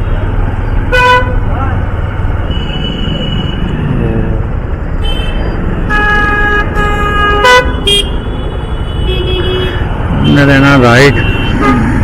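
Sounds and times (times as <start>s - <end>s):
vehicle horns honking: 0.9s - 1.4s, 5.0s - 12.0s.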